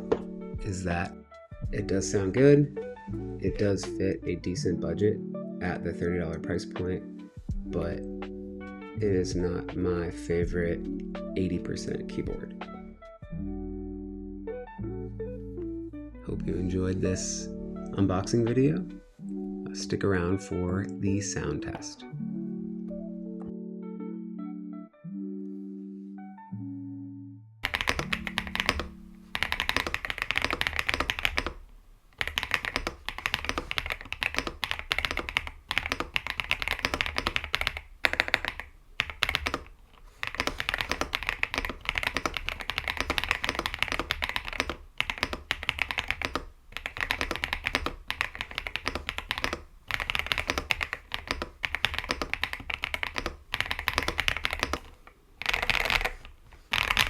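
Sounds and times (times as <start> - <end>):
mechanical keyboard typing: 27.6 - 31.6, 32.2 - 57.0.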